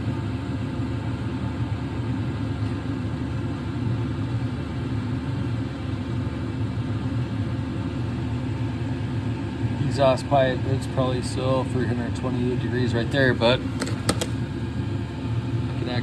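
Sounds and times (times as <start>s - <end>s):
air heater running: 0.0s - 16.0s.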